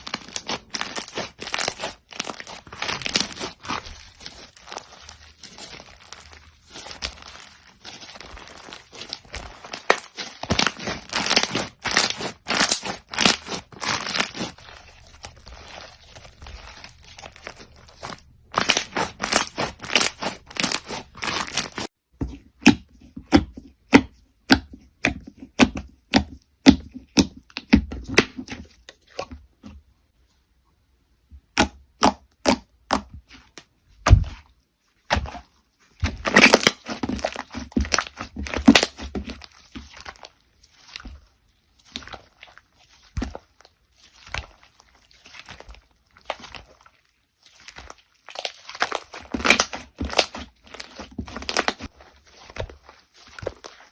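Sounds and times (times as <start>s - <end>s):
slime crackling and popping: 0.0s - 22.0s, 36.0s - 53.9s.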